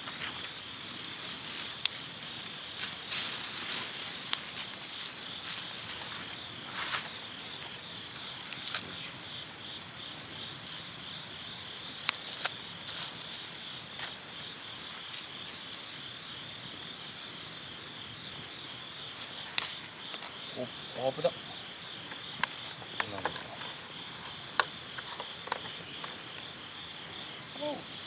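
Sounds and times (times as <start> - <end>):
insects chirring: 0.0 - 28.0
campfire clicks and pops: 1.7 - 2.9, 4.2 - 6.1, 10.3 - 12.6, 19.2 - 20.6, 21.6 - 27.4.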